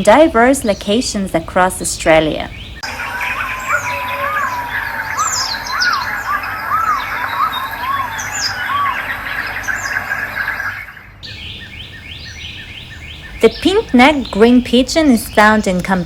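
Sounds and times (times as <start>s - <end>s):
high bird chirps: 2.5s - 14.6s
bird whistles: 2.8s - 13.4s.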